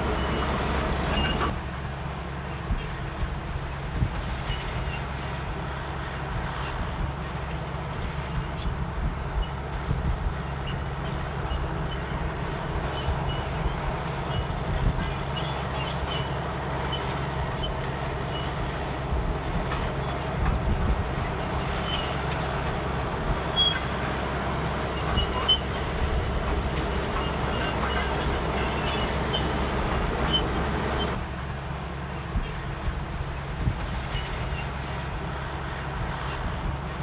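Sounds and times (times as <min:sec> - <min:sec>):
metal tracks clinking and rattling: 0:00.0 - 0:01.6, 0:10.5 - 0:31.2
bulldozer diesel engine running: 0:00.0 - 0:37.0.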